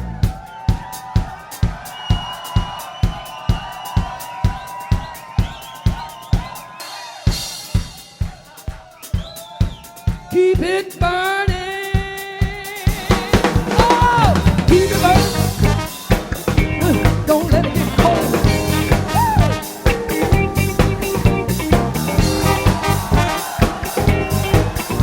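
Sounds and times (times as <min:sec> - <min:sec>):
funk band with bass: 0:00.0 - 0:00.5, 0:12.8 - 0:25.0
drum kit beat: 0:00.0 - 0:25.0.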